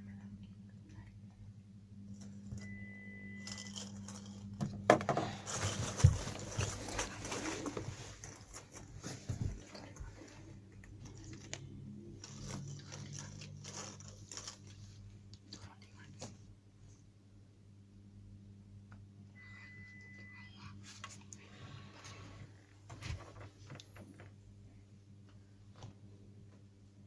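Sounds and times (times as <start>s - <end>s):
low steady hum: 0.0s - 27.0s
rustling and clicking handling noise: 3.4s - 16.4s, 22.8s - 24.4s.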